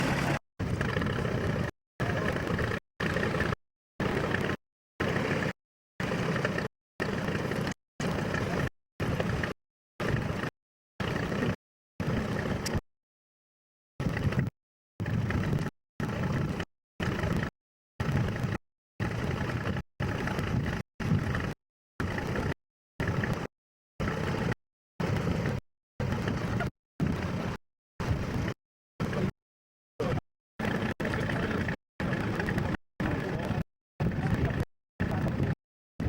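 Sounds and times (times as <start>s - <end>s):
tractor engines running: 0.0s - 8.6s.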